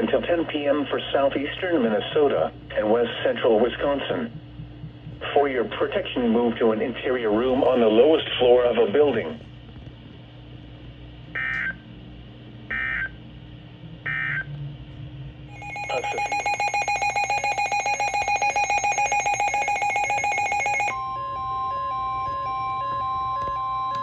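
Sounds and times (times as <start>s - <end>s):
digital data tone bursts: 15.5s - 21.1s
steady alert tone with beeps: 15.5s - 22.2s
pulsing electronic alert tone: 15.5s - 22.6s.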